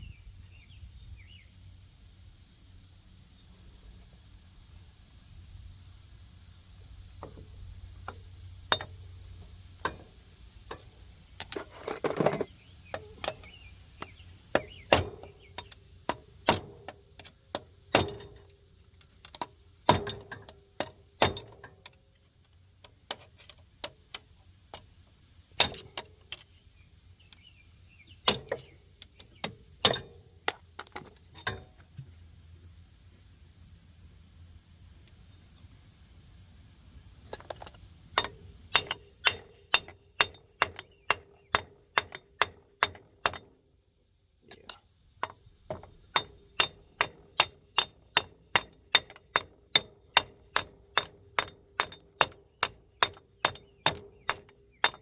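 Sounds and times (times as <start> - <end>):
scraping rattle: 10.7 - 13.6
metal knocks and clanks: 19.3 - 21.8.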